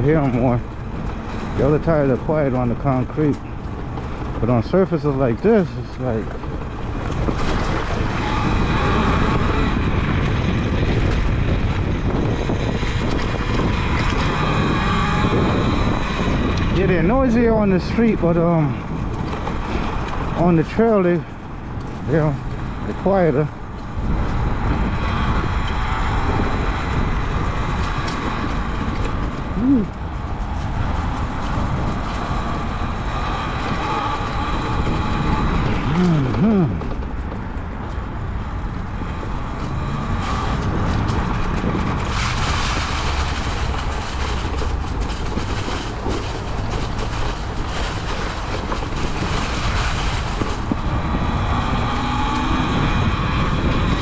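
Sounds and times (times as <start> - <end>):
dirt bike tire rolling on trail: 0.0 - 54.0
electric motor whine: 6.7 - 16.8, 21.9 - 36.8, 38.2 - 44.5.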